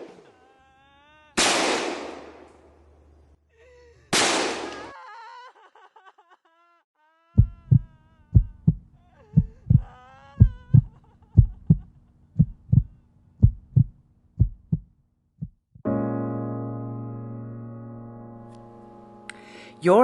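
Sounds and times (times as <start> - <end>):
heartbeat thumps: 7.4 - 15.8.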